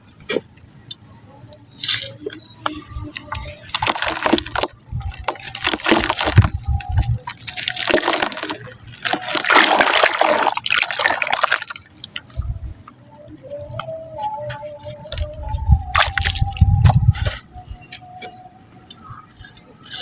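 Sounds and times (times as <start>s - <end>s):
mud crumbling in water: 3.3s - 12.6s, 15.9s - 17.0s.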